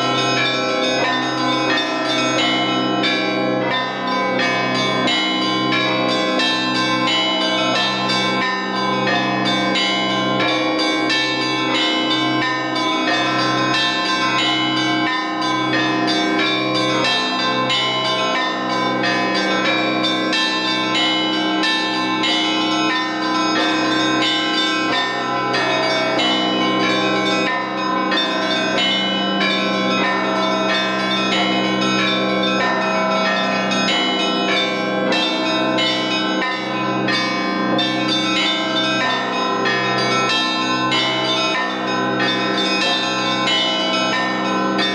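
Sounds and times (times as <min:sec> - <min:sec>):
large low bell striking: 0:00.0 - 0:44.9
small bells ringing: 0:00.0 - 0:44.9.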